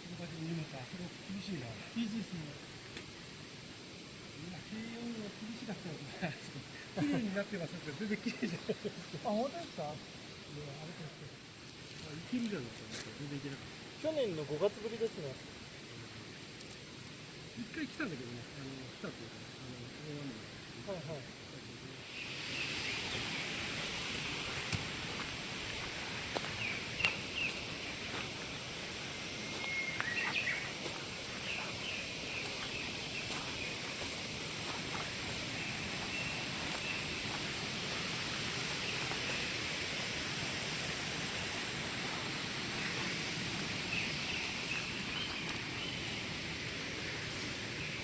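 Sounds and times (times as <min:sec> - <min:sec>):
steady woodland rush: 0:00.0 - 0:48.0
bird calls: 0:26.6 - 0:34.2, 0:43.8 - 0:46.3.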